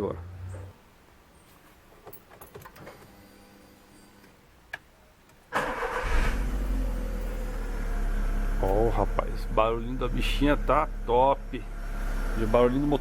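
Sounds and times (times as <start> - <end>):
starter motor cranking: 5.6 - 7.7
car engine idling: 5.6 - 13.0.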